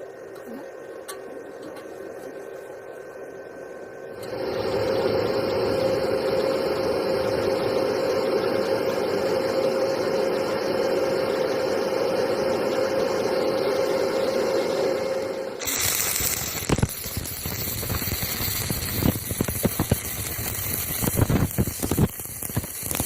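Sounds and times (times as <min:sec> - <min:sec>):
machine humming with hiss: 0:00.0 - 0:23.0.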